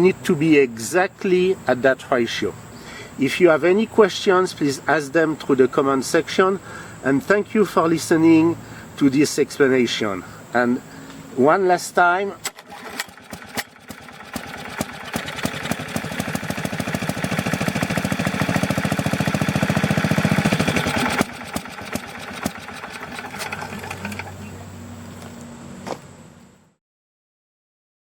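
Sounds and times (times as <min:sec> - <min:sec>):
small gasoline engine running: 0:12.5 - 0:24.7.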